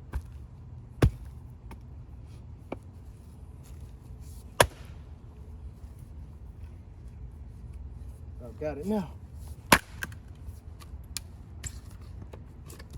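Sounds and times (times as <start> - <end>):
axe splitting firewood: 1.0 - 1.4, 4.6 - 5.0, 9.7 - 10.2.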